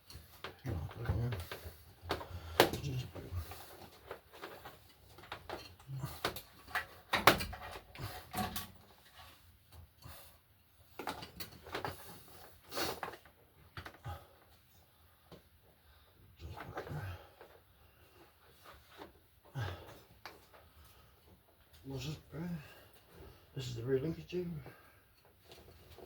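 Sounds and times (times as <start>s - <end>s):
knocks and clicks of tools: 5.2s - 8.8s.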